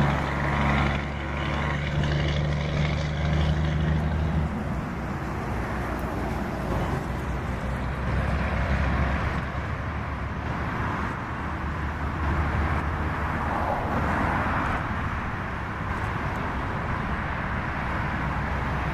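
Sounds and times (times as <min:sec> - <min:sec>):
noisy exhaust: 0:00.0 - 0:18.9
truck engine rumbling: 0:00.0 - 0:18.9.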